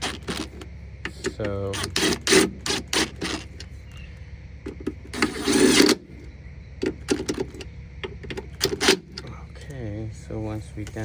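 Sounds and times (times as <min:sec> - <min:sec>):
harsh rasping scrape: 0:00.0 - 0:03.7, 0:05.1 - 0:06.1
steady low hum: 0:00.0 - 0:11.0
metal clicks and knocks: 0:06.8 - 0:09.2.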